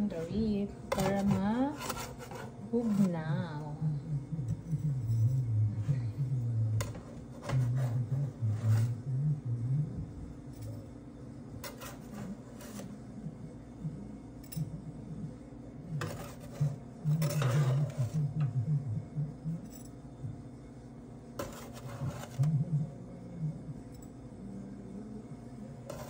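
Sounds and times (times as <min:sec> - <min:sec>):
metal utensils and dishes clinking: 0:16.0 - 0:18.2.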